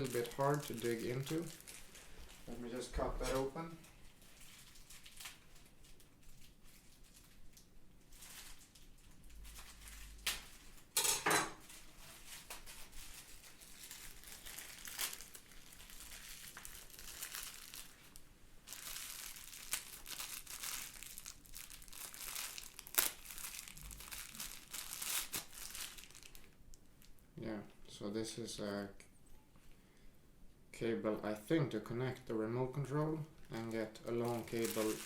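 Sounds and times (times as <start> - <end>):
packaging crinkling and rustling: 0.0 - 11.0, 11.6 - 27.2, 33.4 - 35.0.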